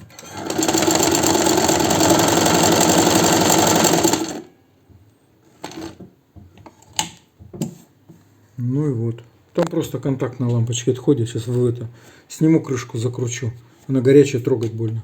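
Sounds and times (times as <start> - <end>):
sewing machine running fast: 0.0 - 4.5.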